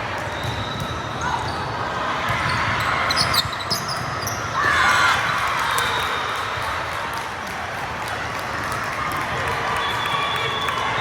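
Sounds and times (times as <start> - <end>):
sneaker squeaks on court: 2.4 - 4.6.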